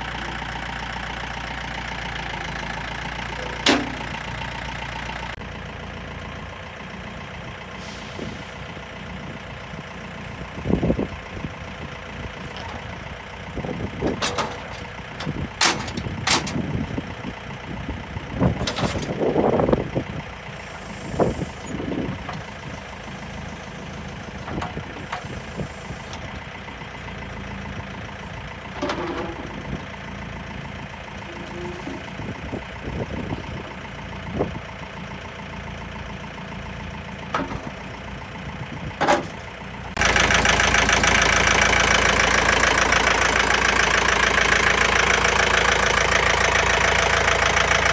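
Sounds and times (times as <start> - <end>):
tractor diesel engine running: 0.0 - 47.9
clunks and knocks: 3.3 - 5.2, 11.8 - 17.1, 18.4 - 19.5, 21.0 - 34.3, 36.6 - 40.5.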